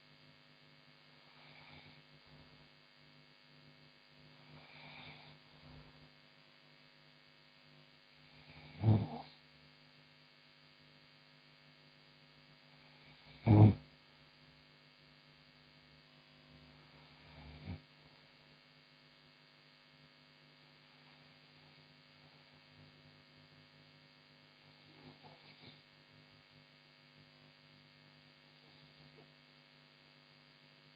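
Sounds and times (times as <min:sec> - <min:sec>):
electrical mains hum: 0:00.0 - 0:30.9
woman snoring: 0:01.3 - 0:02.0, 0:04.5 - 0:05.4, 0:08.3 - 0:09.4, 0:12.9 - 0:13.8, 0:17.1 - 0:17.8, 0:24.9 - 0:25.8
faint breath: 0:04.4 - 0:05.9, 0:28.6 - 0:29.3.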